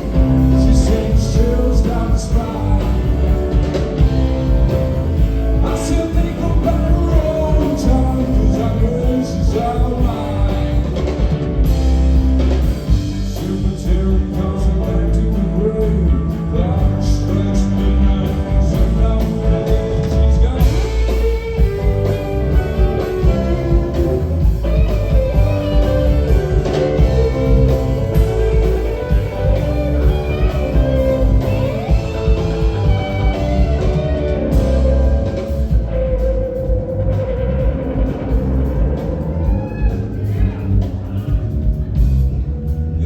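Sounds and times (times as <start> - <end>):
electric guitar: 0.0 - 42.1
live rock band playing: 0.0 - 43.0.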